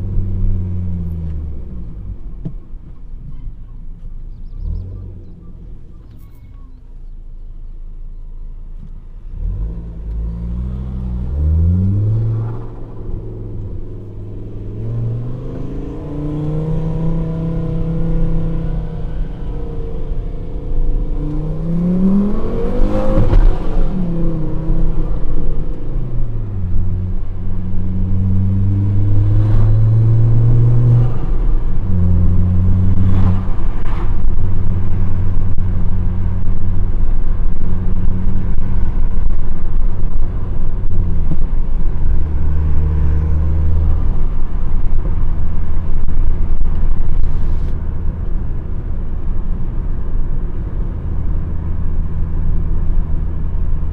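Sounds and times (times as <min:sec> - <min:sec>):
car engine revving: 0:09.2 - 0:50.0.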